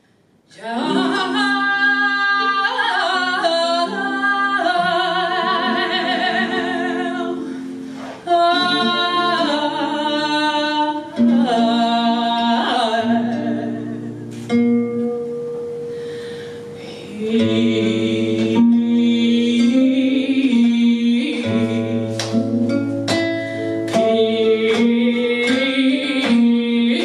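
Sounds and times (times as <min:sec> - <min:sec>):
woman singing flamenco: 0:00.5 - 0:27.0
instrumental accompaniment: 0:13.1 - 0:27.0.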